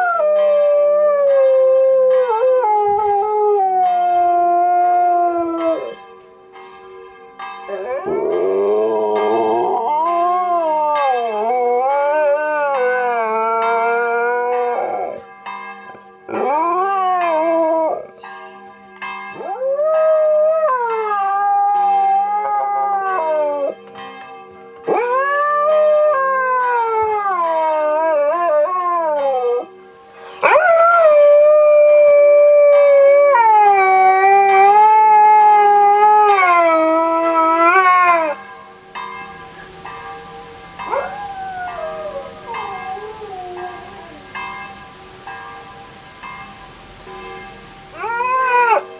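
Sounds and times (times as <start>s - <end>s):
dog howling: 0.0s - 6.0s, 7.7s - 15.3s, 16.3s - 18.2s, 19.4s - 23.8s, 24.9s - 29.8s, 30.4s - 38.5s, 40.8s - 44.8s, 47.9s - 48.9s
church bell ringing: 0.0s - 48.9s.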